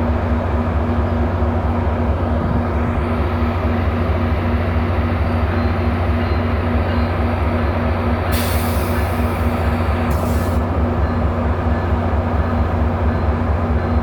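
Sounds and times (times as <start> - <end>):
diesel locomotive rumbling: 0.0 - 14.0
sharp hiss of air: 8.3 - 9.5.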